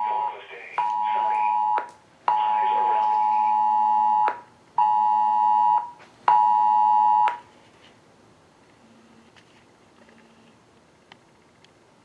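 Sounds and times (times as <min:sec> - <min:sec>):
two-tone phone alert blare: 0:00.0 - 0:07.4.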